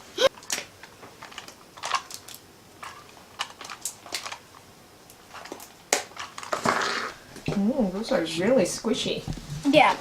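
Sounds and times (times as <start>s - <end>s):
packaging rustling and crinkling: 0.4s - 4.6s, 5.3s - 7.0s.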